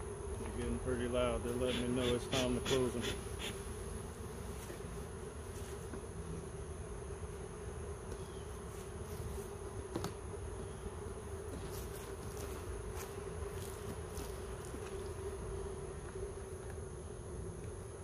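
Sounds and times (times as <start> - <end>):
bees buzzing loudly: 0.0 - 18.0.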